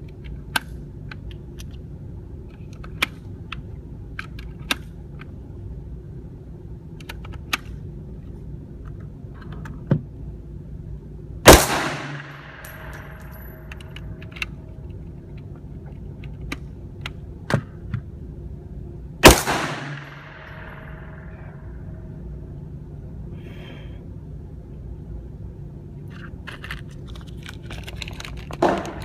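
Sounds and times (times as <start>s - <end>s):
gunshots with echo: 11.5s - 13.1s, 19.2s - 21.4s.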